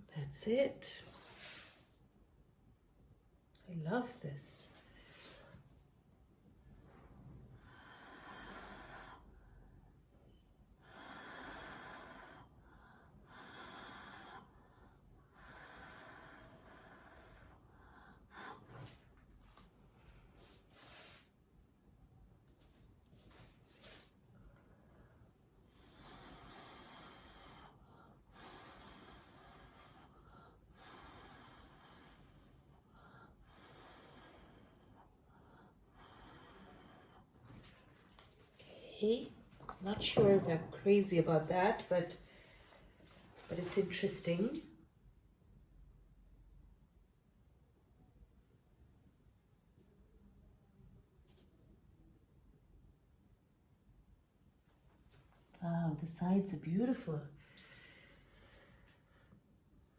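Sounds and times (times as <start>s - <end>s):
faint slow breathing: 1.0s - 2.1s, 4.8s - 5.9s, 6.8s - 21.4s, 23.1s - 40.5s, 42.1s - 43.5s, 57.3s - 59.9s.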